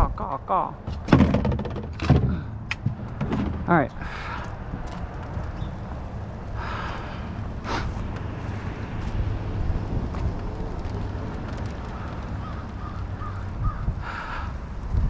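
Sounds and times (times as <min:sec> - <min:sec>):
crows cawing: 0:11.9 - 0:14.6.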